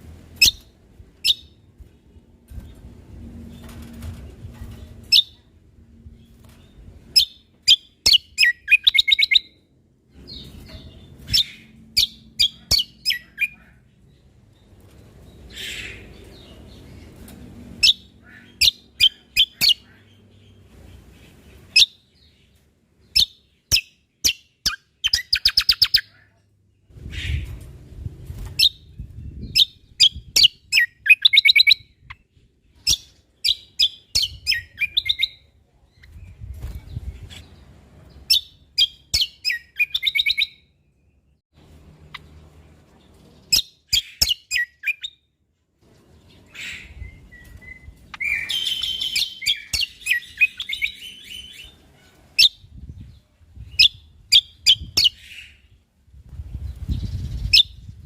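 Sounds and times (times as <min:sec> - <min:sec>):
faint low rumble: 0:00.0 - 0:07.6
songbird chirping: 0:03.6 - 0:27.8, 0:28.4 - 0:55.8.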